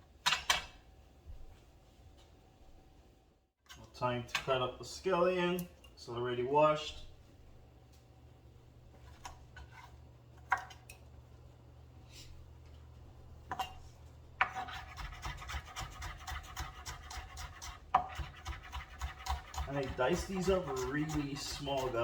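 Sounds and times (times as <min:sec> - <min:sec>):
knife chopping on cutting board: 0:14.4 - 0:22.0.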